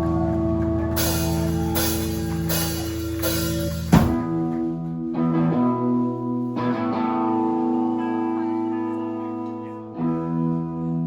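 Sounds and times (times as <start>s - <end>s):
electric guitars ringing chords: 0.0s - 11.0s
hard band hit: 3.9s - 4.4s.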